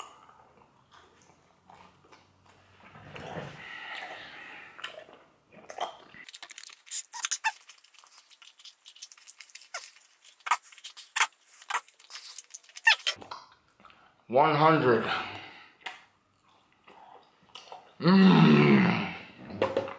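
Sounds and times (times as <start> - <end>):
wet chewing gum squelching: 4.8 - 14.1.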